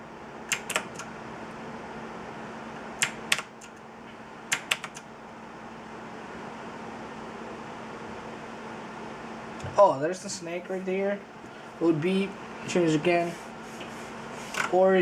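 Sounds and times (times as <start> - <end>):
steady low hum: 0.0 - 15.0
mechanical keyboard clicks: 0.5 - 1.1, 3.0 - 3.8, 4.5 - 5.0.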